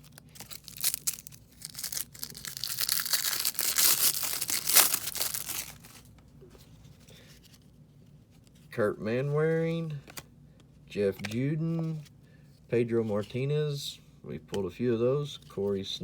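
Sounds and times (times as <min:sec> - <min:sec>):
card pack wrapper tearing: 0:00.0 - 0:06.0
wrapper crinkling: 0:00.0 - 0:06.1.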